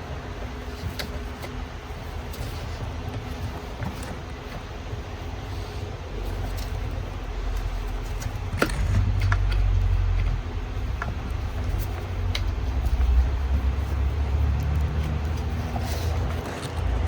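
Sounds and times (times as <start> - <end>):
car engine rumbling: 5.5 - 17.0.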